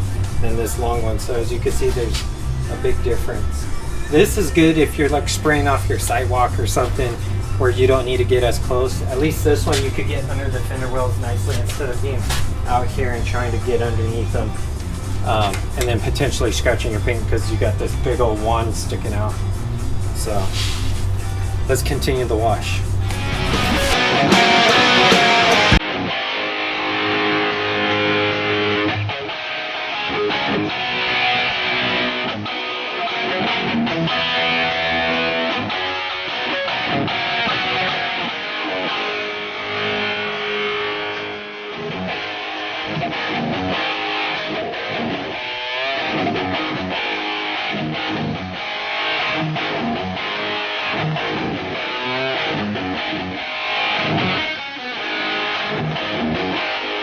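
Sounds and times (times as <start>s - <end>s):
electric guitar music with beat: 0.0s - 57.0s
loud hiss: 18.8s - 24.0s.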